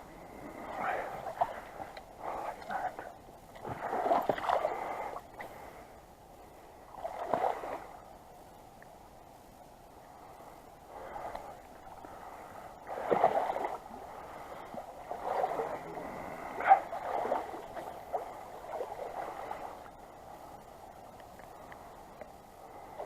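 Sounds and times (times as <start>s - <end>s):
water splashes: 0.0s - 5.8s, 6.8s - 8.1s, 10.9s - 20.5s
creek water running: 0.0s - 9.0s, 10.3s - 23.0s.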